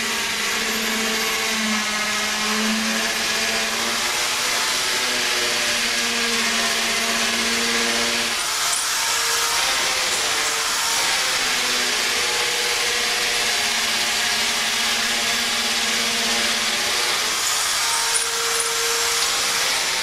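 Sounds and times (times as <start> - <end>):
electric drill boring into brick: 0.0 - 20.0.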